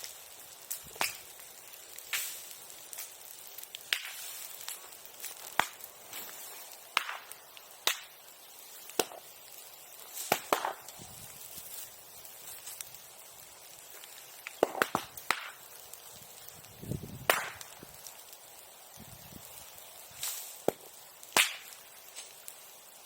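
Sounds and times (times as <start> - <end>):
bonfire crackling and popping: 0.0 - 23.0
faint hiss: 0.0 - 23.0.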